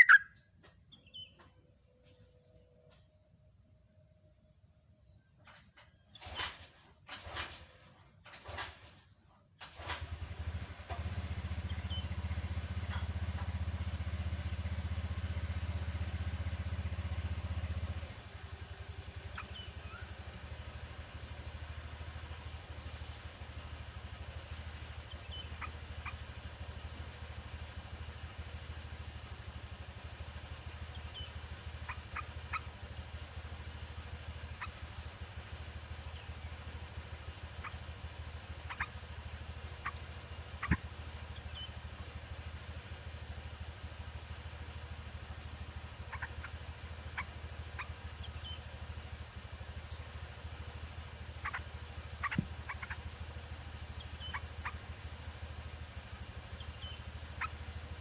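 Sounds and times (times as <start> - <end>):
bird chirping: 0.0 - 2.2, 11.5 - 42.2, 44.9 - 58.0
low motor-like hum: 9.8 - 58.0.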